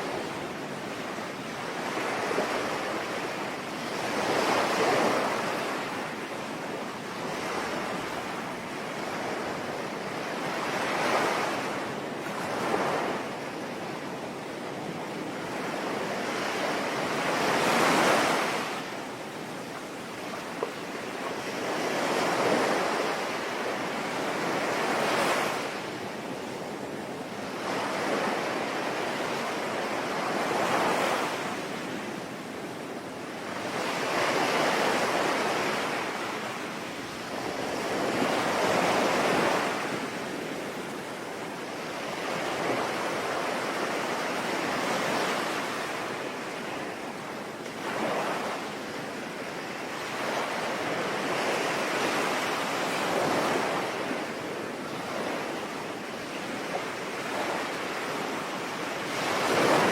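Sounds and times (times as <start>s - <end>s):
sea waves breaking: 33.4s - 59.9s.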